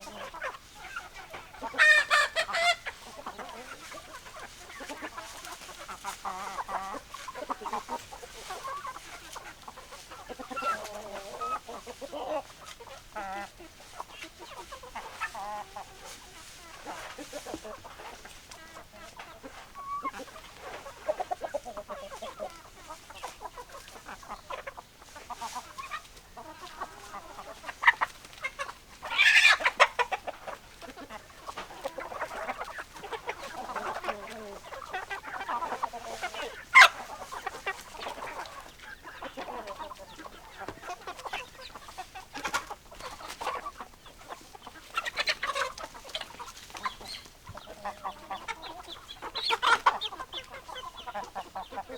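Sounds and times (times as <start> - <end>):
chickens clucking: 0.0 - 51.9
chicken giving high call: 0.1 - 3.8.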